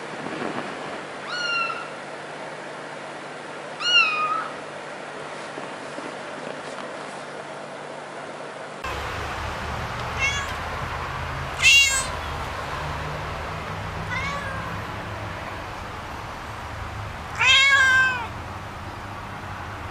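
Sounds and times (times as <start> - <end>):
steady low hum: 0.0 - 19.9
cat meowing: 1.2 - 2.0, 3.8 - 4.6, 10.1 - 10.7, 11.5 - 12.2, 14.0 - 14.8, 17.3 - 18.3.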